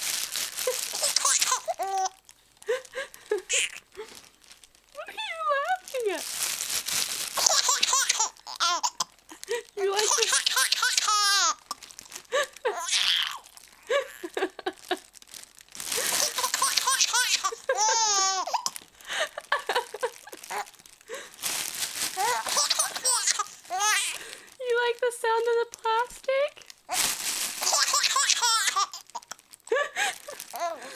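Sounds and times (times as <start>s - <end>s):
plastic crackling: 0.0s - 30.9s
baby laughing: 0.6s - 2.2s, 3.4s - 3.9s, 7.4s - 14.7s, 16.0s - 18.8s, 19.6s - 20.7s, 22.2s - 24.3s, 27.6s - 29.4s, 30.0s - 30.9s.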